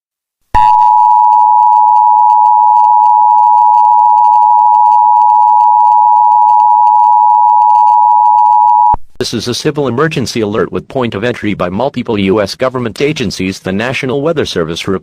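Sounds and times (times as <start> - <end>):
two-tone alert tone: 0.6 - 9.0.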